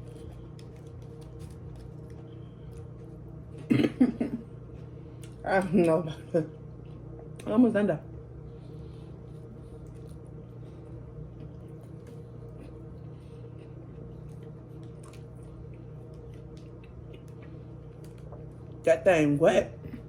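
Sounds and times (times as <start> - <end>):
wet chewing: 0.0 - 3.4, 8.7 - 18.8
steady low hum: 0.0 - 20.0.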